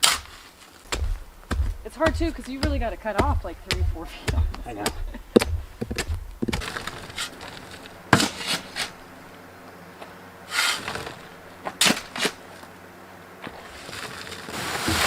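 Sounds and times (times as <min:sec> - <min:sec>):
sharp knocks and clacks: 0:00.9 - 0:07.0
scraping rustle: 0:05.6 - 0:09.0, 0:10.4 - 0:12.8, 0:13.4 - 0:15.0.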